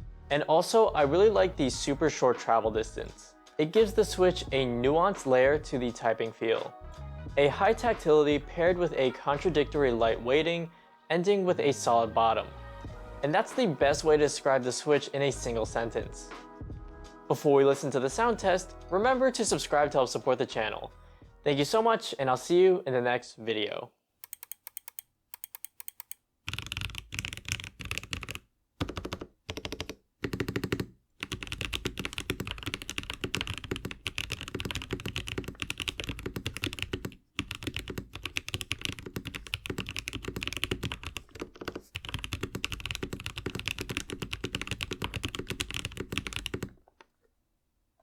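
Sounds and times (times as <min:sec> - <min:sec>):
mechanical keyboard typing: 0:24.2 - 0:46.8.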